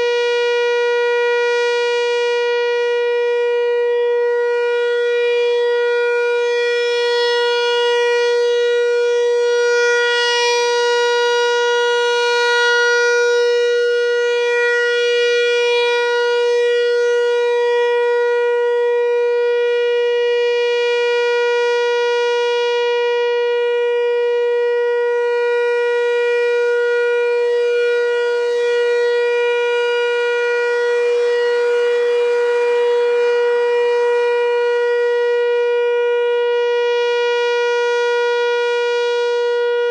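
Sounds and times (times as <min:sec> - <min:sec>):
steady tone warning siren: 0:00.0 - 0:39.9.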